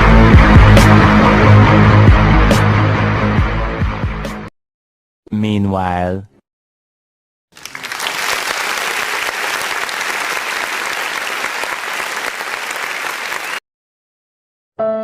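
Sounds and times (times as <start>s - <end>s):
crowd applause: 7.6s - 13.6s.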